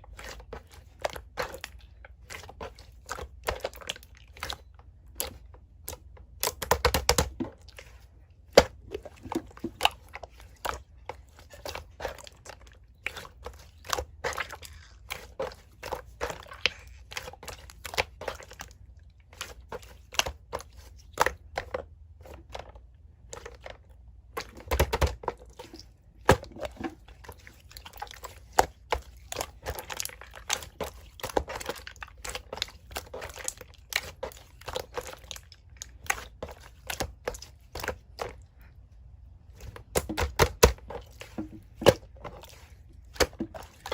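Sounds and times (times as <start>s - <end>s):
chewing: 7.6s - 20.9s, 25.4s - 38.9s.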